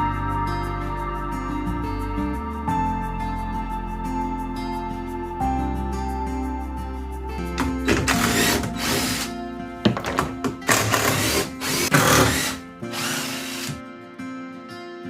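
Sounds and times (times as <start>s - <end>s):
background music: 0.0s - 15.0s
cordless power driver bursts: 7.9s - 9.3s, 10.7s - 13.8s.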